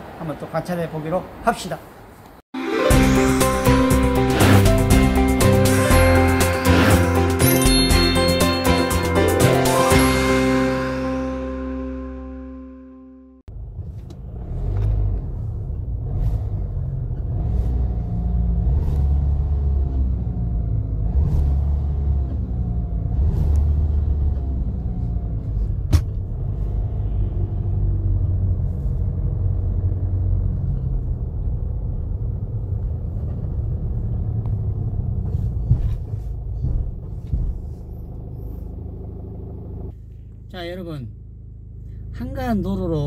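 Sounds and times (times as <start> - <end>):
car engine and road rumble: 13.5 - 43.0.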